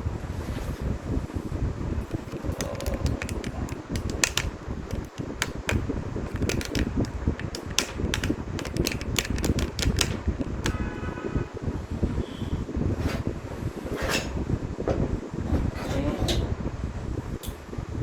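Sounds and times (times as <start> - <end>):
plastic parts clicking and tapping: 2.0 - 11.0.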